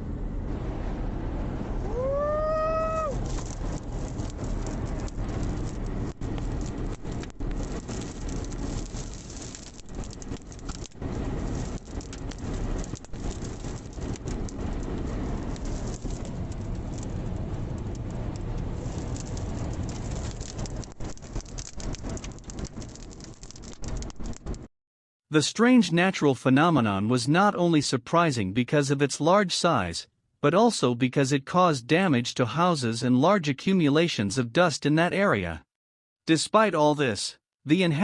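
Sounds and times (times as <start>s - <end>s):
storm wind on microphone: 0.1s - 24.7s
sand or rain hitting: 3.2s - 24.6s.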